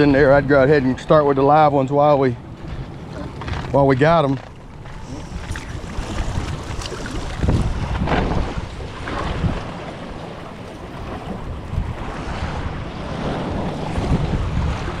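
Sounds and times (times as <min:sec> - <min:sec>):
wind buffeting microphone: 0:00.0 - 0:15.0
surf washing on beach: 0:05.0 - 0:15.0.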